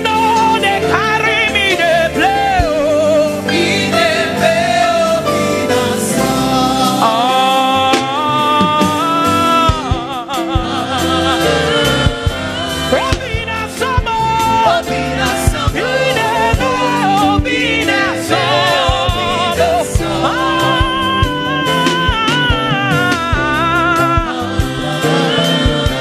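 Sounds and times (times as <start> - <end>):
held keyboard notes: 0.0 - 26.0
steady drum beat: 0.0 - 26.0.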